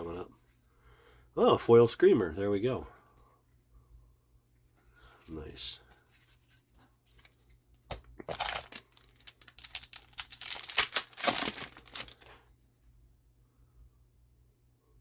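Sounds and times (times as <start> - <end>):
wrapper crinkling and tearing: 8.2 - 12.4.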